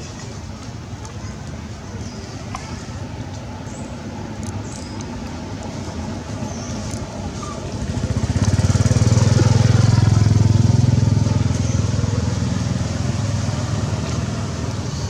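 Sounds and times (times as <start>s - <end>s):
motor vehicle passing: 6.4s - 15.0s.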